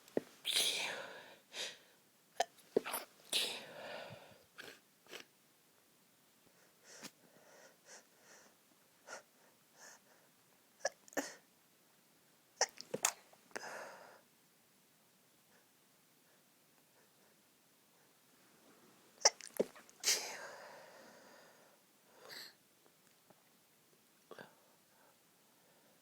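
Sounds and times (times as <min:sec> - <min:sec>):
woman's stifled sneezes: 0:00.4 - 0:01.2, 0:02.8 - 0:03.8, 0:19.2 - 0:20.5.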